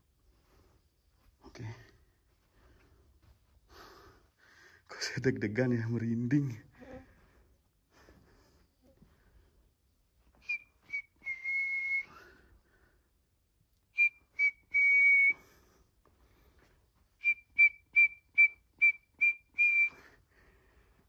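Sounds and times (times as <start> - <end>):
high whistle-like tones: 10.4 - 12.4, 14.0 - 15.5, 17.2 - 20.2.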